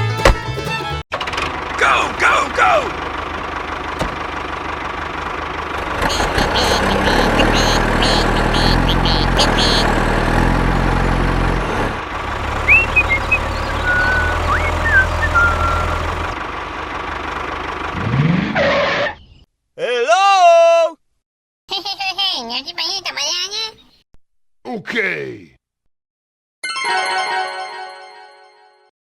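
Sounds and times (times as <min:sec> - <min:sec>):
truck engine idling: 0:00.0 - 0:18.0
short whistling chirps: 0:12.6 - 0:16.0.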